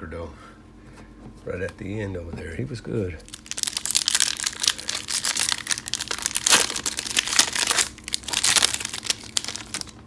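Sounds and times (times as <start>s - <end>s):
foil wrapper crinkling: 3.2s - 10.0s.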